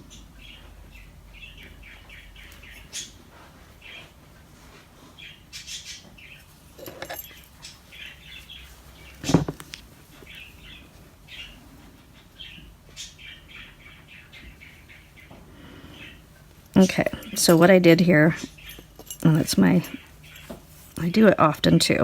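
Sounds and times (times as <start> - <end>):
small bird chirping: 10.2 - 16.2.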